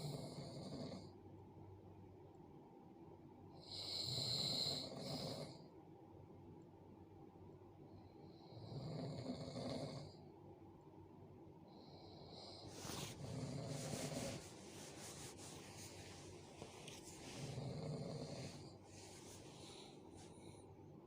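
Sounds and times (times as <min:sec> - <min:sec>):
person snoring heavily: 0:12.2 - 0:14.4, 0:17.4 - 0:18.7.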